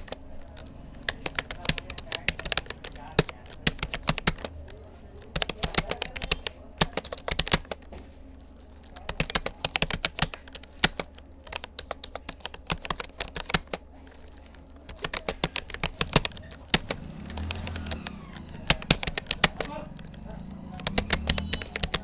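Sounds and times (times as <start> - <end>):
computer keyboard typing: 0.0 - 8.0, 8.7 - 22.0.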